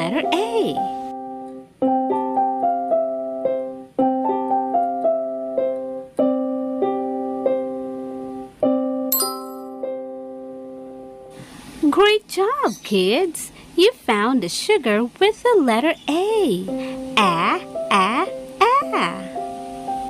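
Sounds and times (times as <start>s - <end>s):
gentle electric piano melody: 0.0s - 11.3s, 16.6s - 20.0s.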